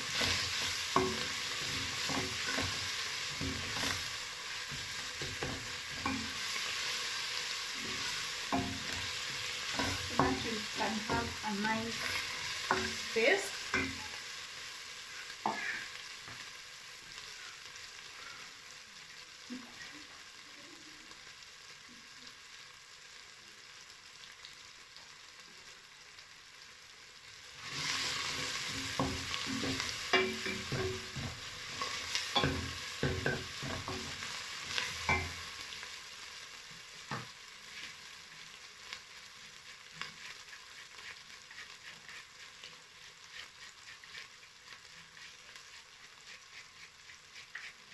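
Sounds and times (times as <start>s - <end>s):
spoon scraping a pan: 0.0s - 14.3s, 27.6s - 35.6s, 39.4s - 47.9s
food sizzling in a frying pan: 0.0s - 47.9s.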